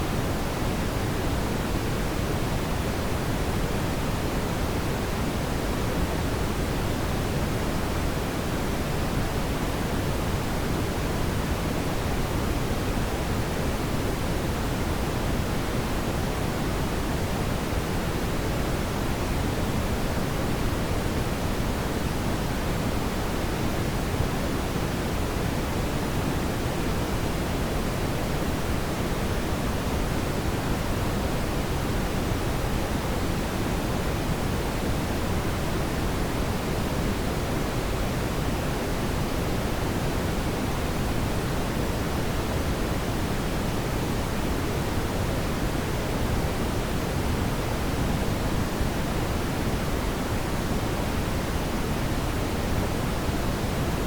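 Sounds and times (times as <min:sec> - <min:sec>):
brown noise hiss: 0:00.0 - 0:54.0.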